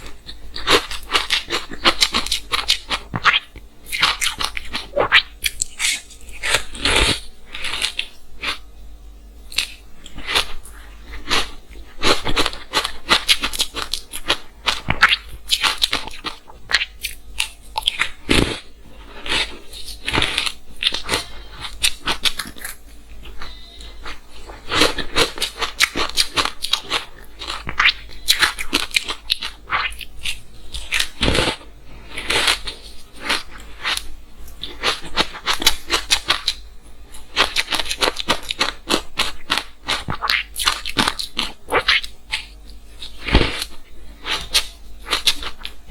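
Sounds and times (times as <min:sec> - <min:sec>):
ice being bitten and chewed: 0:37.4 - 0:45.8.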